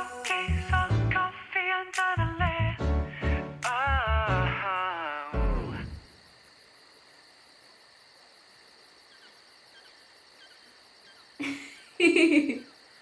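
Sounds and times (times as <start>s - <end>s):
crickets chirping: 0.0s - 1.8s, 4.4s - 13.0s.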